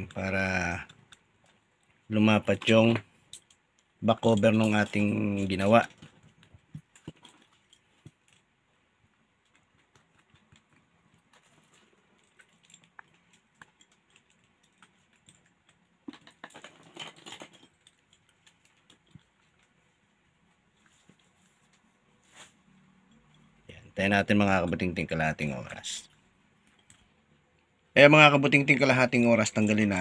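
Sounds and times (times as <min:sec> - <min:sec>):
small objects clicking and rattling: 0:00.0 - 0:19.8, 0:23.0 - 0:27.2
objects clattering: 0:00.8 - 0:08.5, 0:09.8 - 0:19.8.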